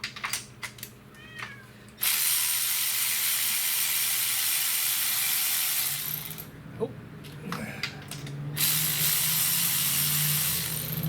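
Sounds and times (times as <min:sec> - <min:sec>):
cat meowing: 0:01.2 - 0:01.7
ratchet wrench clicking: 0:02.0 - 0:06.5, 0:08.1 - 0:11.0.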